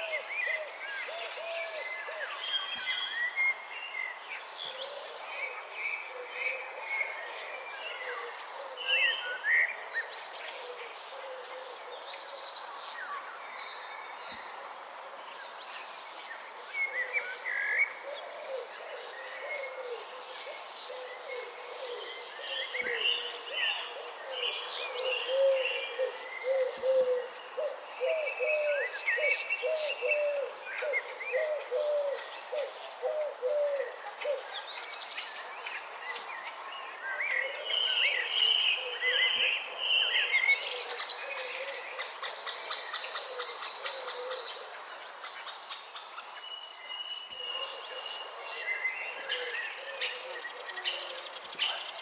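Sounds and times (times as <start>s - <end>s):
high-pitched insect chorus: 0.0s - 52.0s.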